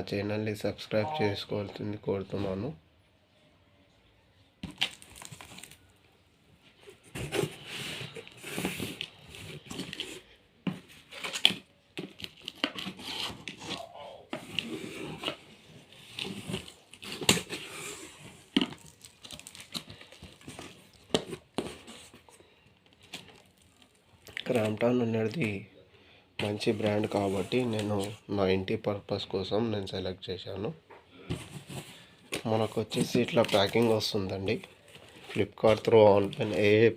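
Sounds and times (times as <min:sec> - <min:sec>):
cardboard packaging ripping: 0:04.6 - 0:05.8, 0:11.0 - 0:22.1.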